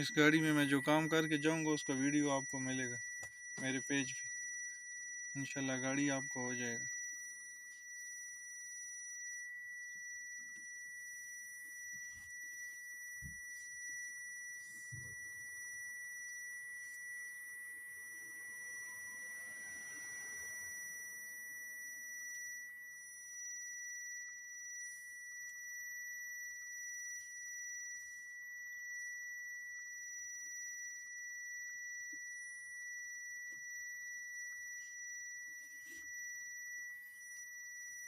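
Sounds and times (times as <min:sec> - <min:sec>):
high-pitched electronic tone: 0:00.0 - 0:07.8.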